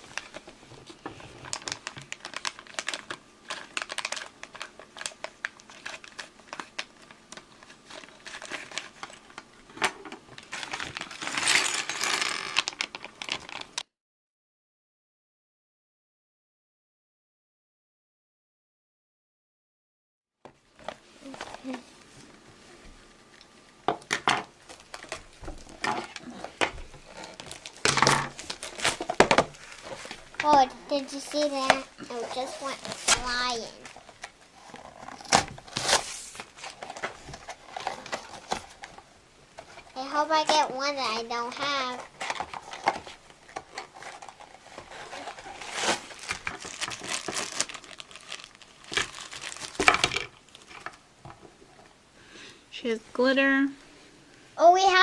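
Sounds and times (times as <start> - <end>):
plastic packaging clicks and rustles: 0.0 - 13.9, 23.4 - 51.5.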